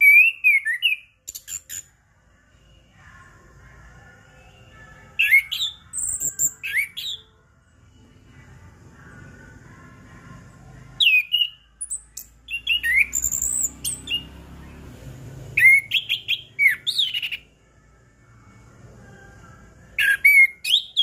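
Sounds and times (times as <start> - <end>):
thrush singing whistled notes: 0.0 - 2.0, 4.4 - 8.3, 10.9 - 17.6, 19.9 - 21.0.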